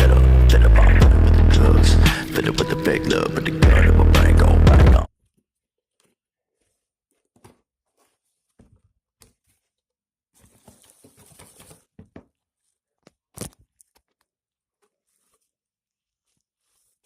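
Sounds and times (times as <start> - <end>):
packaging rustling: 10.4 - 17.0.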